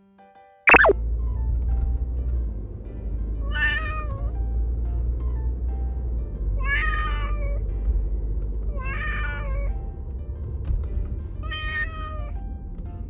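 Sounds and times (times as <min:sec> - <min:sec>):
kitten meowing: 0:03.5 - 0:04.2, 0:06.6 - 0:07.6, 0:08.8 - 0:09.7, 0:11.5 - 0:12.3.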